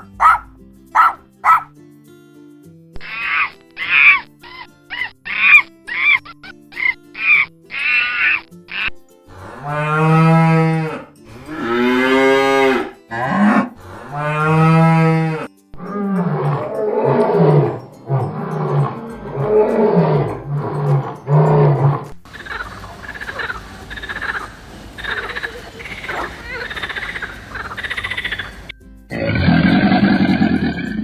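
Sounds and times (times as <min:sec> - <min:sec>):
short high chirping calls: 0:03.0 - 0:08.9, 0:22.3 - 0:28.7
cattle mooing: 0:09.4 - 0:22.7, 0:26.1 - 0:31.0.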